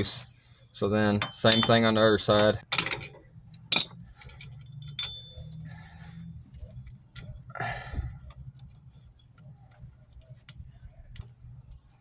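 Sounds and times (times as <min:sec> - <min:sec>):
ringing metallic clink: 0:01.2 - 0:01.9, 0:03.7 - 0:05.7
faint clicks and taps: 0:08.2 - 0:11.9.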